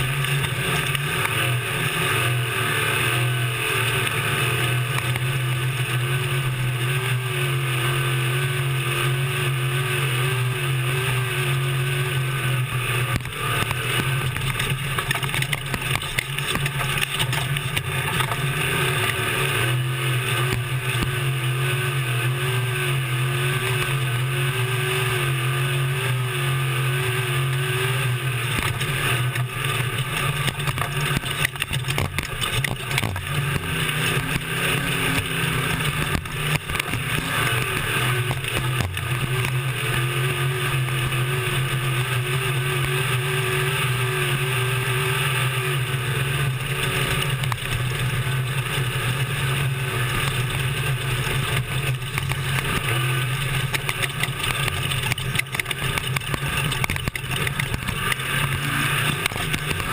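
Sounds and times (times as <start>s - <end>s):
truck engine running: 0.0s - 59.9s
knocks and rattles: 13.2s - 19.2s, 51.2s - 59.9s.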